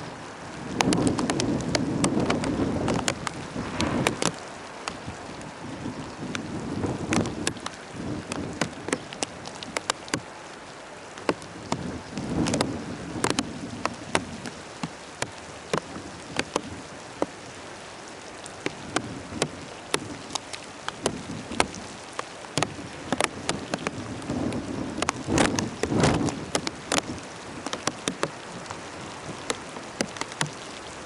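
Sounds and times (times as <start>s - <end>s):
heavy rain: 0.0s - 31.0s
raindrop ticks: 0.0s - 31.0s
thunder rumbles: 0.6s - 8.6s.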